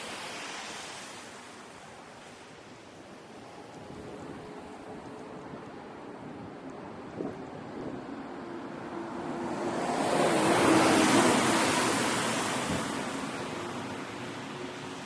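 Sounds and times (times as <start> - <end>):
tyres hissing through slush: 0.0 - 3.4, 9.3 - 15.0.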